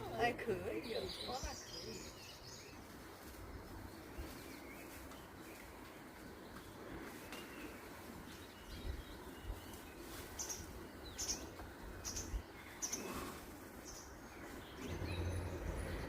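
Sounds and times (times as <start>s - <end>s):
faint outdoor rumble: 0.0s - 16.0s
bird chirping: 0.8s - 2.9s, 6.4s - 16.0s.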